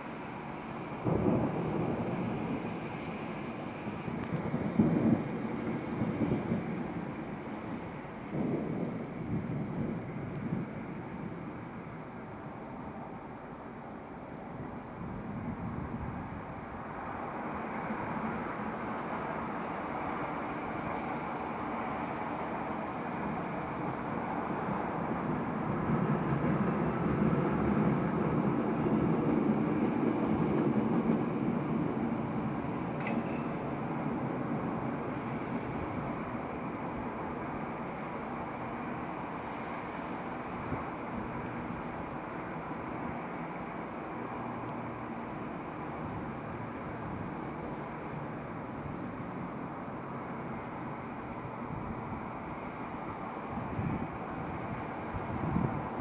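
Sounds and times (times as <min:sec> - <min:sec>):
distant thunder rolling: 0:00.9 - 0:12.8
thunder rumbling: 0:00.9 - 0:13.3, 0:14.1 - 0:44.3.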